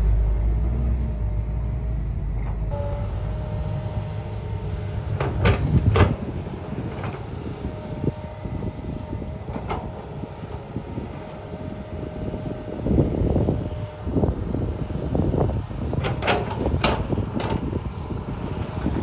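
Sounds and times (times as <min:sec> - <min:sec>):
thin whine: 0:00.0 - 0:09.2
excavator engine rumble: 0:00.0 - 0:19.0
metal knocks and clanks: 0:05.1 - 0:06.3, 0:16.0 - 0:17.6.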